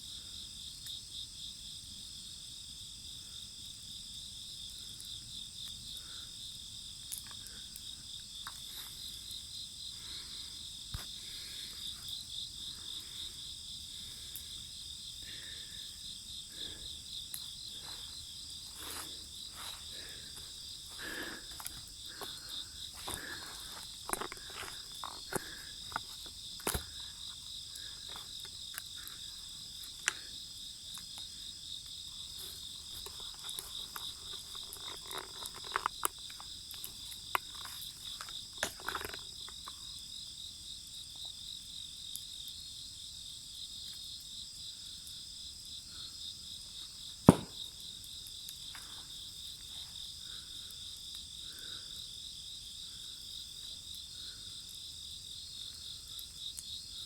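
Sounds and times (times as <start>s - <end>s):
insects chirping: 0.0s - 57.0s
wood fire crackling: 3.8s - 40.1s
loud sharp crack: 47.3s - 47.6s.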